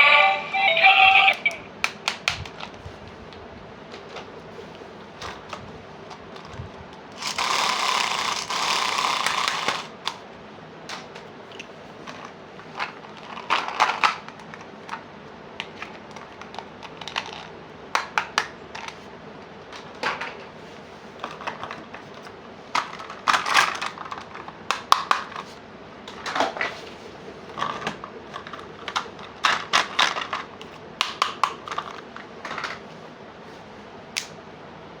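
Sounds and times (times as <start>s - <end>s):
plastic toy pieces clicking: 7.2s - 9.9s.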